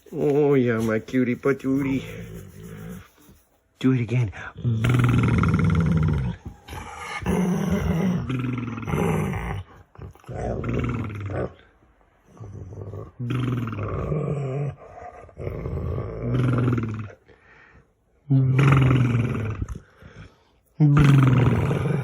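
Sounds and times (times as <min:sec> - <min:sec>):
dog growling playfully: 0:04.6 - 0:11.7, 0:12.3 - 0:17.2, 0:18.5 - 0:19.9, 0:21.0 - 0:22.0.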